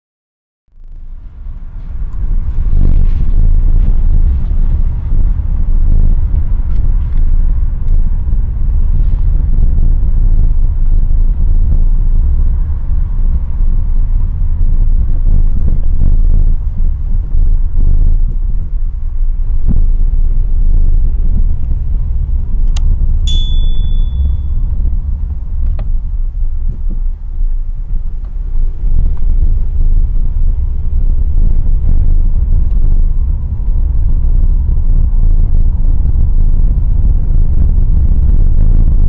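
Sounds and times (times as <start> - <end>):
short electronic ding: 23.3 - 24.5.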